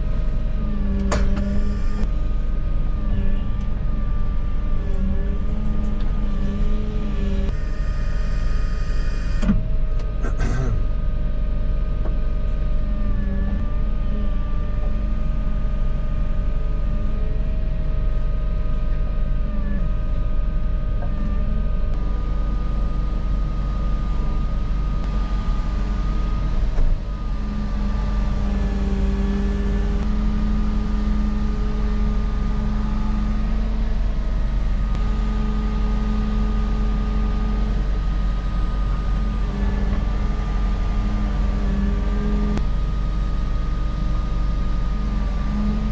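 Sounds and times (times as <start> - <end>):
hydraulic whining tones: 0.0 - 2.2, 3.0 - 9.7
excavator diesel rumble: 0.0 - 45.9.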